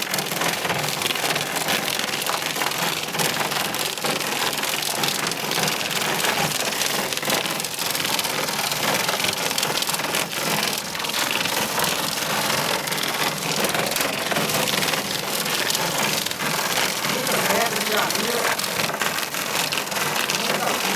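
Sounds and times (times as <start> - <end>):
hail clattering on hard surfaces: 0.0 - 20.9
heavy rain hiss: 0.0 - 20.9.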